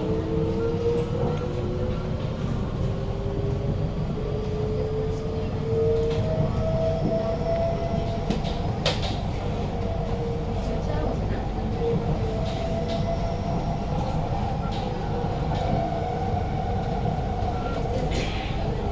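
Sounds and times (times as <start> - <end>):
train rumble: 0.0 - 18.9.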